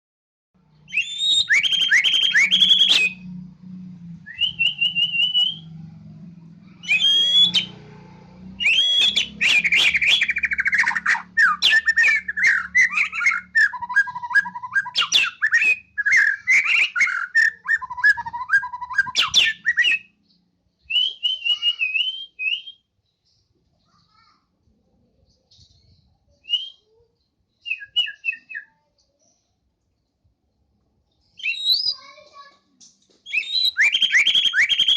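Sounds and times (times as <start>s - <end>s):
bird singing whistles and trills: 0.8s - 3.4s, 4.3s - 5.7s, 6.8s - 7.8s, 8.6s - 20.2s, 20.8s - 23.0s, 25.8s - 27.0s, 27.6s - 28.9s, 31.2s - 32.2s, 33.2s - 34.9s.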